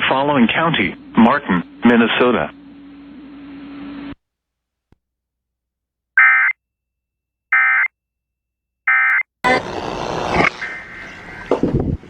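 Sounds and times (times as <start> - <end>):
faint hiss and hum: 0.0 - 4.2
buzzy data tone bursts: 9.4 - 11.1.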